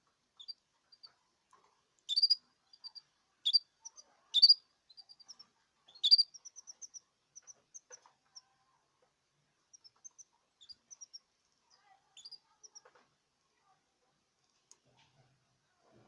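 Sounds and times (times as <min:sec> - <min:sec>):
young canaries chirping: 0:02.1 - 0:08.1, 0:09.7 - 0:12.9.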